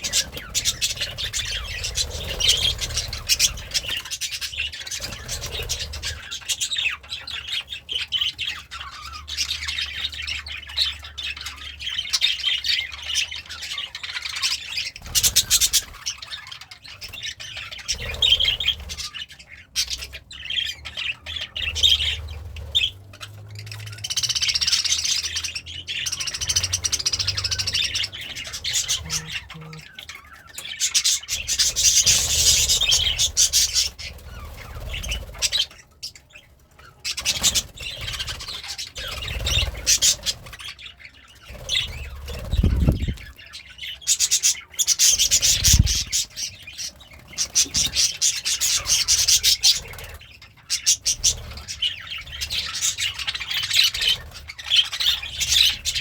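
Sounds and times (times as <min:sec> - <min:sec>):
budgerigar chattering and warbling: 0:00.0 - 0:09.8, 0:12.0 - 0:35.7.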